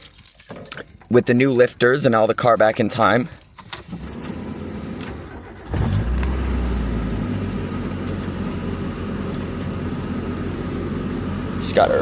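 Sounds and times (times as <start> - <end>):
keys jingling: 0.0 - 6.7
car engine starting and idling: 3.8 - 12.0.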